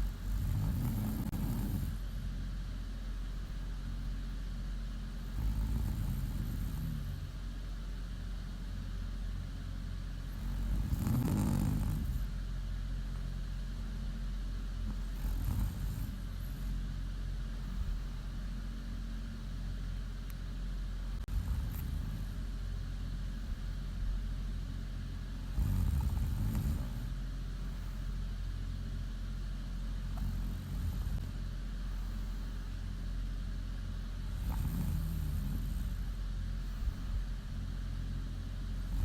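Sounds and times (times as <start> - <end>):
woman snoring: 0.0 - 2.2, 5.2 - 7.4, 10.3 - 12.4, 14.9 - 16.7, 21.2 - 22.5, 25.4 - 27.2, 30.1 - 31.3, 34.2 - 36.2, 38.8 - 39.0
steady low hum: 0.0 - 39.0.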